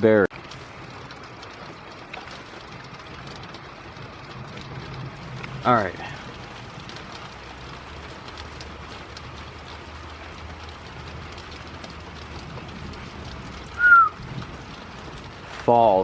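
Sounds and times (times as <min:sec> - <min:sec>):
faint drips: 0:00.0 - 0:16.0
low steady hum: 0:00.0 - 0:16.0
steady rain: 0:00.0 - 0:16.0
high whistle-like note: 0:13.8 - 0:14.2.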